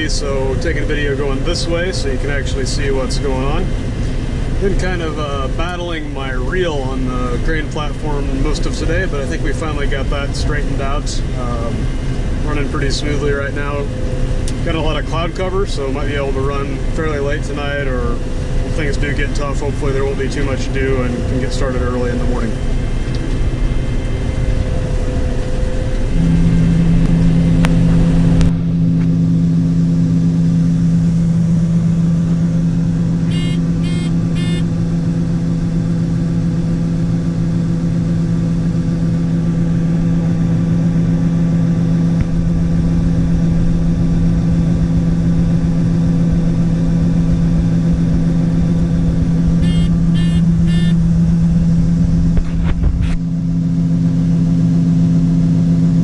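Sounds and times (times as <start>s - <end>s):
combine engine droning: 0.0s - 56.0s
rapid electronic beeps: 33.3s - 34.7s, 49.6s - 51.0s.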